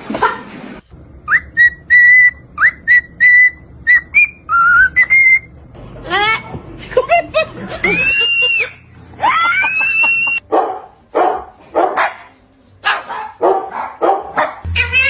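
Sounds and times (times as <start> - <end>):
bird whistling: 1.3 - 5.5.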